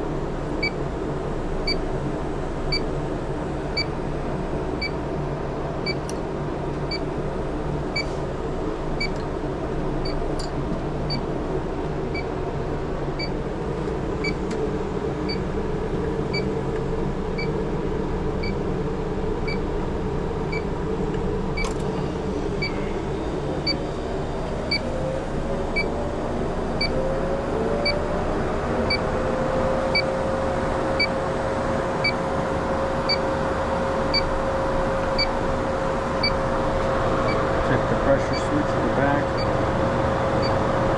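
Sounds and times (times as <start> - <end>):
machinery hum: 0.0 - 40.9
leak detector beeping: 35.2 - 35.4, 36.2 - 36.4.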